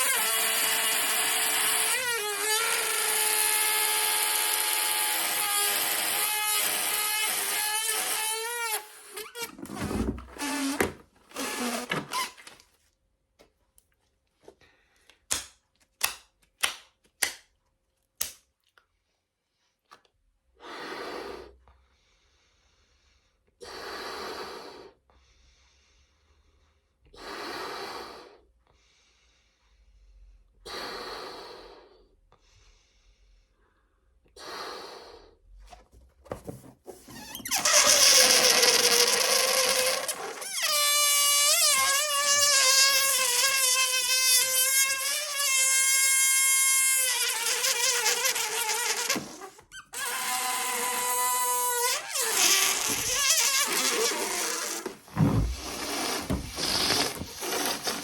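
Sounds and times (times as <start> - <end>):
balloon air rushing out squealing: 0.0 - 12.4, 37.1 - 58.0
foil balloon crinkling: 0.0 - 12.6, 37.0 - 58.0
breathy puffs into balloon: 47.0 - 58.0.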